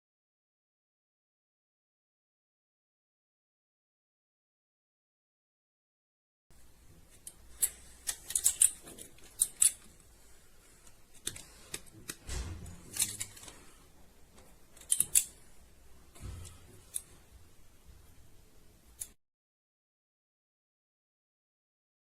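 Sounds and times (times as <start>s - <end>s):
metallic clicks of multitool: 7.2s - 9.8s, 14.8s - 15.4s.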